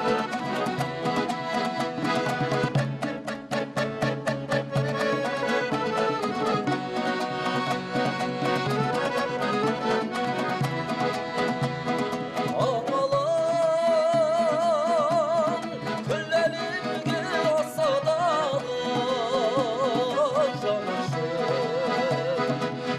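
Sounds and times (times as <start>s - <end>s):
folk music on accordion: 0.0s - 22.9s
drum strokes: 0.1s - 12.8s.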